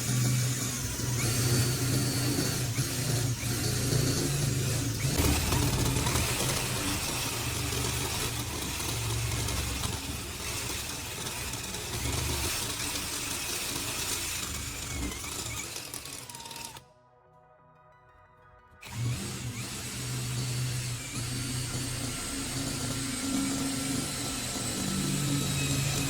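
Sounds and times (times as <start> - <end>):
power tool motor running: 0.0 - 16.8, 18.8 - 26.0.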